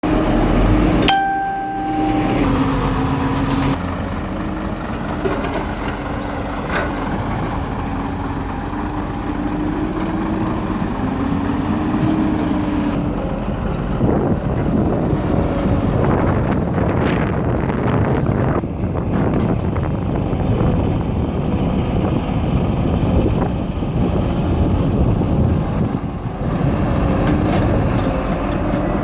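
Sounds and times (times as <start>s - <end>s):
excavator diesel engine running: 0.0s - 29.0s.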